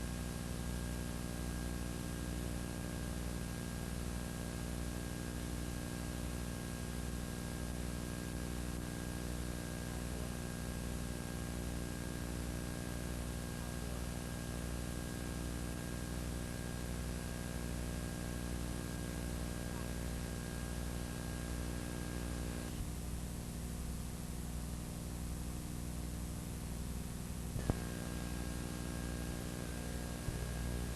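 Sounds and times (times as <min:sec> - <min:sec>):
electrical mains hum and hiss: 0:00.0 - 0:30.9
faint high whine: 0:27.4 - 0:30.9.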